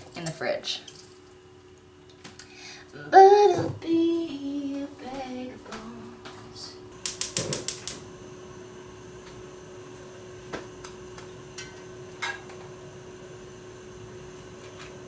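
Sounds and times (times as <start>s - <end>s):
appliance hum: 0.0s - 15.0s
sharp clicks: 7.0s - 8.0s.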